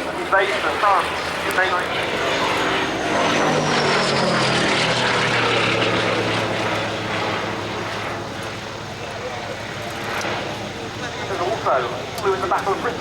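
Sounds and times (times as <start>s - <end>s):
biplane engine and propeller flying past: 0.0s - 13.0s.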